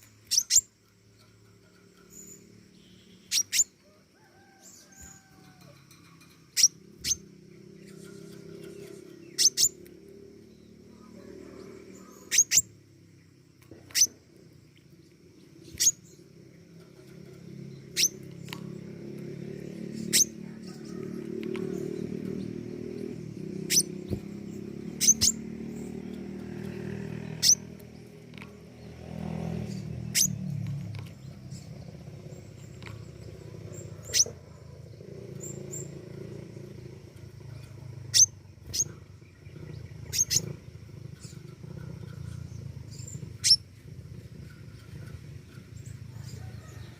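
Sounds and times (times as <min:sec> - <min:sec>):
songbird high chirps: 0:00.0 - 0:05.3, 0:05.9 - 0:46.9.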